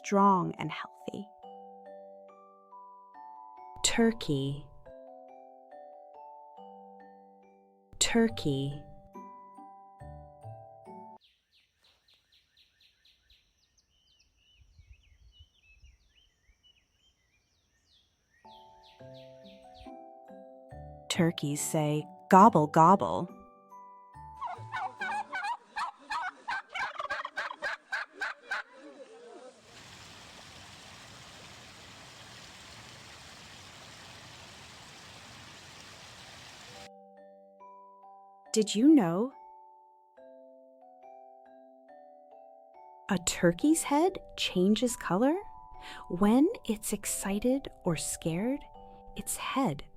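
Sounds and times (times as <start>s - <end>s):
birds chirping and warbling: 11.2s - 20.0s
background hiss: 29.1s - 36.9s.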